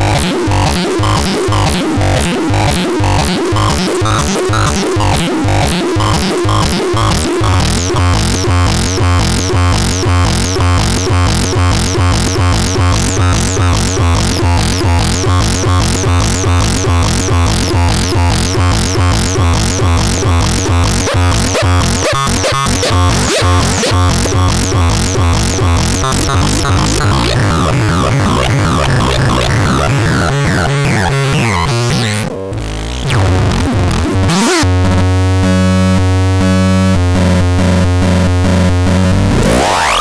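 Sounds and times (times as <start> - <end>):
fast pulsing synthesizer pattern: 0.0 - 40.0
harsh noise: 0.0 - 40.0.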